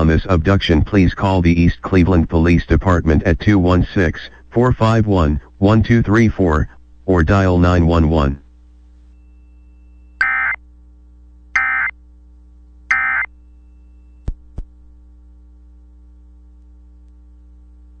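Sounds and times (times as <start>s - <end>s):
low steady hum: 0.0s - 18.0s
digital data tone bursts: 10.2s - 10.6s, 11.6s - 11.9s, 12.9s - 13.3s.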